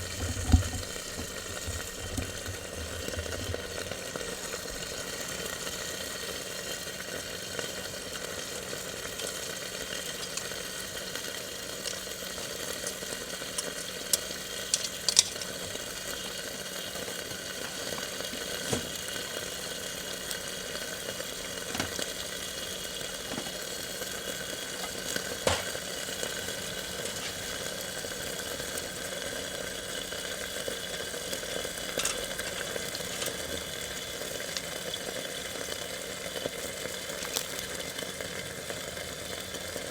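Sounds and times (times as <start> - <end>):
meat sizzling in a frying pan: 0.0 - 39.9
sharp pops and crackles: 11.8 - 16.4, 23.2 - 28.0.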